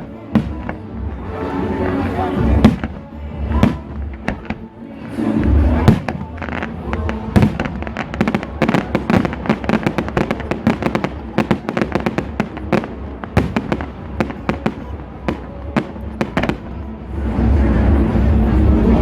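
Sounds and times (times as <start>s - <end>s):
fireworks bangs and crackles: 0.0s - 4.8s, 5.4s - 19.0s
steady low sound: 0.0s - 19.0s.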